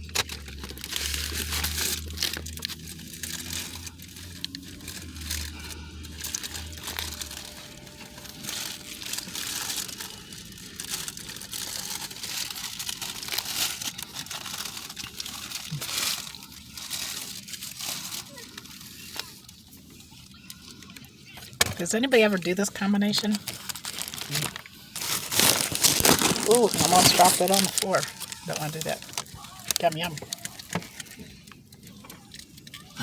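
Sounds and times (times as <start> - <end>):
low hum: 0.0 - 18.2
paper wrapper crinkling: 0.0 - 33.0.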